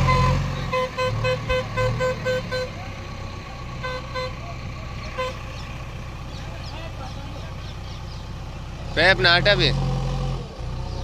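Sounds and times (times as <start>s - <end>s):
vehicle horn beeps: 0.0s - 2.9s, 3.8s - 5.6s
engine running: 0.0s - 11.0s.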